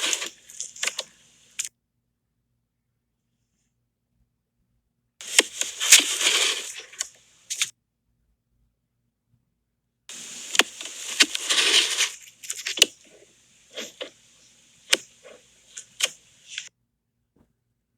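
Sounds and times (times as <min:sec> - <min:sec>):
plastic clicking and rubbing: 0:00.0 - 0:01.7, 0:05.2 - 0:07.7, 0:10.1 - 0:16.7.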